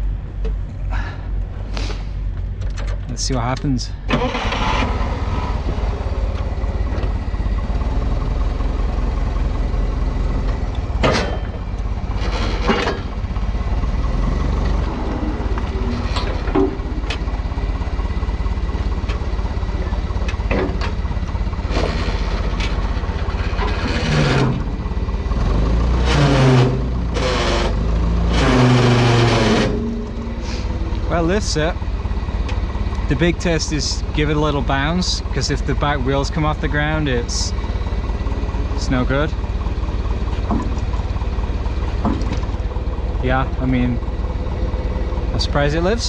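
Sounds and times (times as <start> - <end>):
forklift engine running: 0.0 - 46.0
sharp metal clanks: 11.0 - 13.2.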